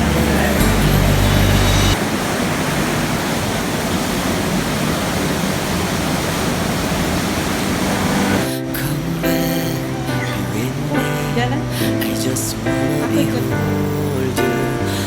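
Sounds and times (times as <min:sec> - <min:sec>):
background music: 0:00.0 - 0:02.0, 0:08.3 - 0:15.0
river water rushing: 0:00.0 - 0:15.0.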